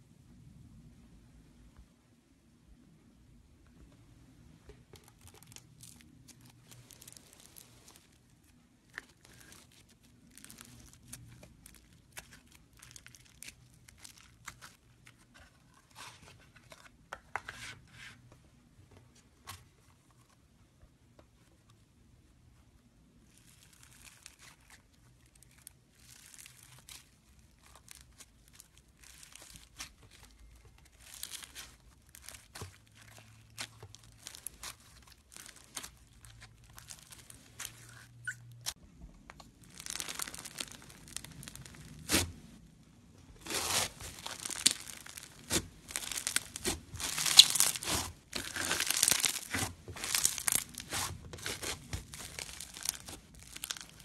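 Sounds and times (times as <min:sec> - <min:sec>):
foam slime crackling pops: 0:39.7 - 0:42.4, 0:43.4 - 0:54.0.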